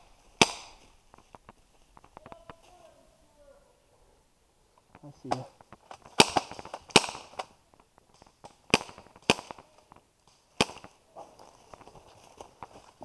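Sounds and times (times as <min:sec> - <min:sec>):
airsoft gun shots: 0:00.4 - 0:00.8, 0:06.2 - 0:07.5.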